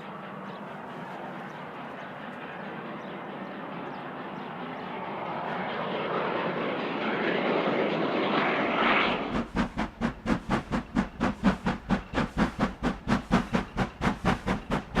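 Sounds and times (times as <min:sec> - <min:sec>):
steam train rushing noise: 0:00.0 - 0:15.0.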